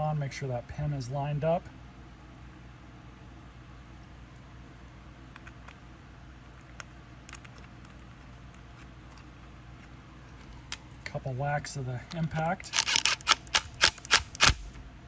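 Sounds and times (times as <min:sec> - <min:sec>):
steady low hum: 0:00.0 - 0:15.0
small metal parts clicking: 0:06.6 - 0:08.3, 0:12.1 - 0:14.6.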